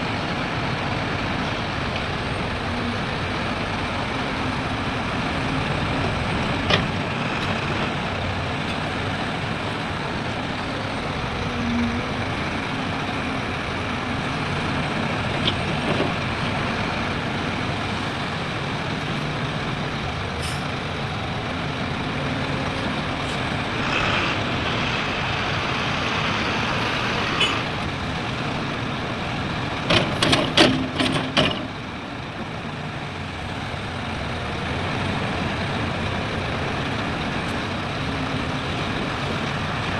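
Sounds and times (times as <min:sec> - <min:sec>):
heavy diesel machinery running: 0:00.0 - 0:39.9.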